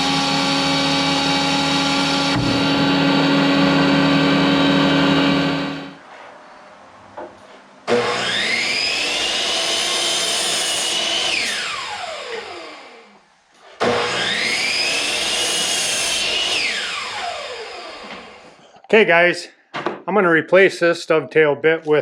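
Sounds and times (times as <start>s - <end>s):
power tool motor whining: 0.0s - 6.0s.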